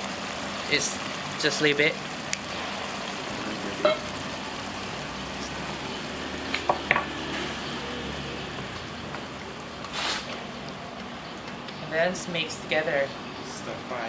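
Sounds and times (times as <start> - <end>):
food sizzling in oil: 0.0 - 10.8
utensil clinking against pan: 3.8 - 4.1.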